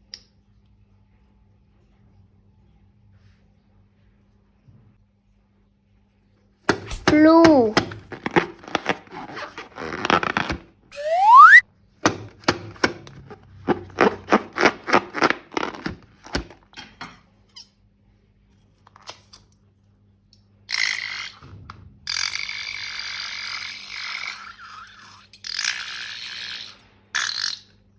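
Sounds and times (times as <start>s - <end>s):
balloon squeak rising in pitch: 8.3s - 11.6s.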